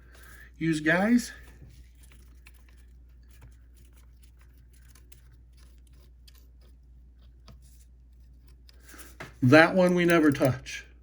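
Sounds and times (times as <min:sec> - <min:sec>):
metal parts clicking and scraping: 0:01.7 - 0:06.8.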